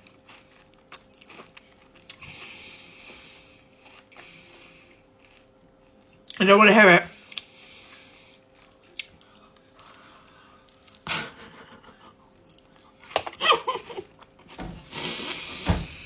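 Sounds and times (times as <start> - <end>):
person chewing crunchy food: 0.0 - 6.4, 7.2 - 11.0.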